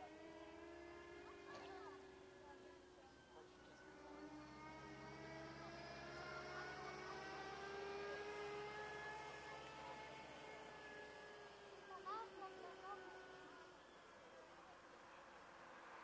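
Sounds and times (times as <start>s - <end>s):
distant jet engines whining: 0.0s - 16.0s.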